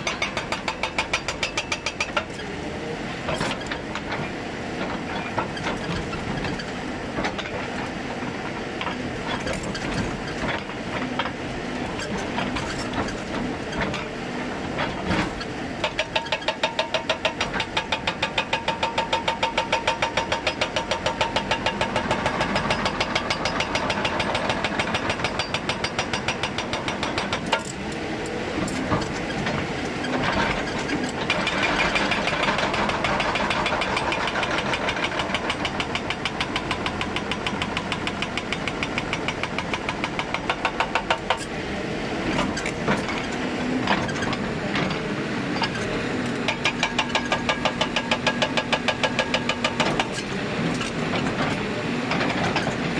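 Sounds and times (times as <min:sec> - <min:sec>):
diesel engine: 0:00.0 - 0:16.4, 0:17.0 - 0:52.9
hydraulic breaker hammering: 0:46.4 - 0:51.1.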